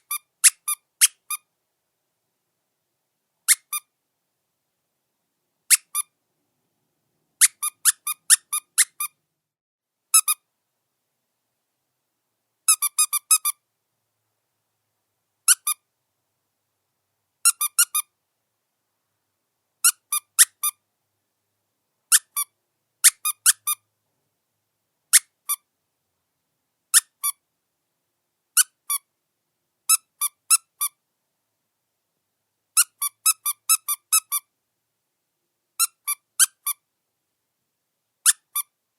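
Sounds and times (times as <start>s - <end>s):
squeaky dog toy squeaks: 0.0s - 1.5s, 3.5s - 3.9s, 5.7s - 6.1s, 7.4s - 9.2s, 10.1s - 10.4s, 12.7s - 13.6s, 15.5s - 15.8s, 17.4s - 18.1s, 19.8s - 20.8s, 22.1s - 23.8s, 25.1s - 25.6s, 26.9s - 27.4s, 28.6s - 29.1s, 29.9s - 31.0s, 32.8s - 34.5s, 35.8s - 36.8s, 38.2s - 38.7s.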